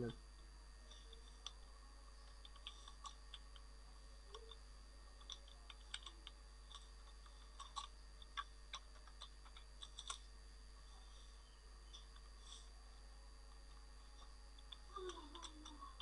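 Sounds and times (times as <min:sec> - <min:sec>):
low steady hum: 0:00.0 - 0:16.0
keyboard and mouse clicking: 0:05.2 - 0:06.8.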